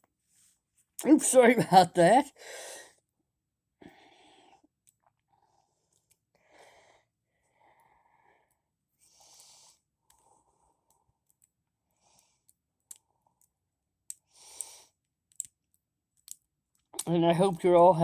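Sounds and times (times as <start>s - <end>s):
faint breathing: 2.4s - 3.0s, 3.8s - 4.7s, 5.3s - 11.1s.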